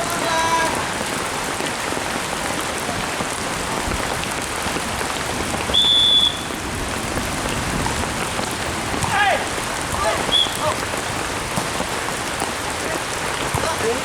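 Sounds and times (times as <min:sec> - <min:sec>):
heavy rain falling: 0:00.0 - 0:14.0
shrill whistle blast: 0:05.7 - 0:06.5, 0:10.3 - 0:10.6.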